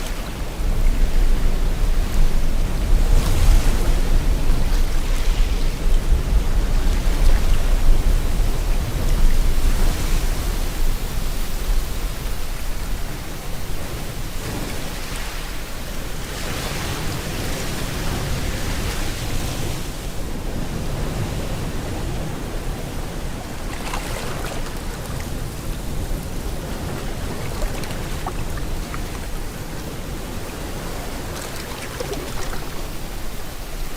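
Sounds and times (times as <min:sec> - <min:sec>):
waves washing in: 0:00.0 - 0:33.9.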